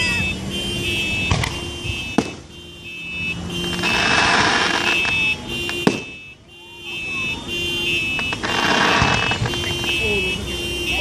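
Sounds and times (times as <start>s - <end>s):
fireworks banging: 1.1s - 2.6s, 3.5s - 6.3s, 7.9s - 10.2s.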